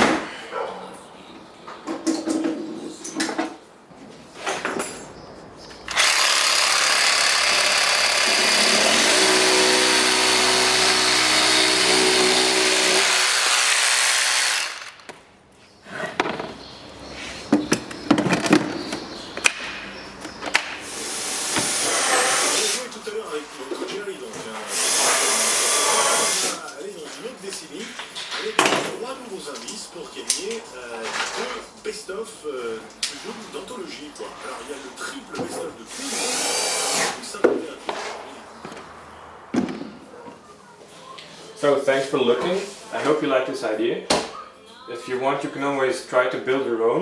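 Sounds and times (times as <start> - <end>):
power tool whirring: 5.9 - 15.1, 20.8 - 22.9, 24.7 - 26.6, 35.9 - 37.2.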